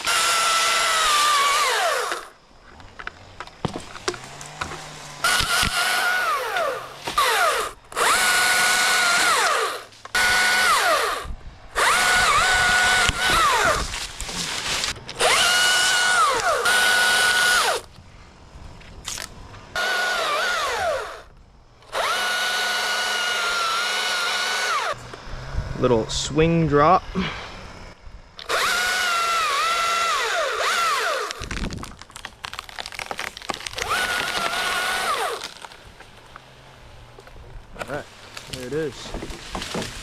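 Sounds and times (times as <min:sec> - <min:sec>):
electric chainsaw cutting branches: 0:00.0 - 0:02.4, 0:03.6 - 0:17.9, 0:19.0 - 0:25.4, 0:28.4 - 0:36.4.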